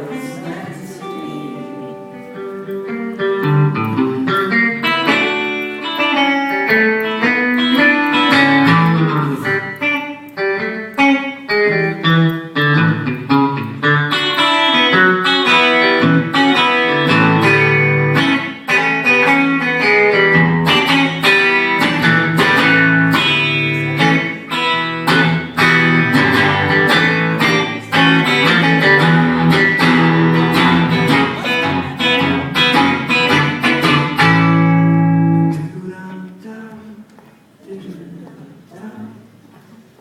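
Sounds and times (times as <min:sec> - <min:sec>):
plucked guitar notes: 0:00.0 - 0:36.3.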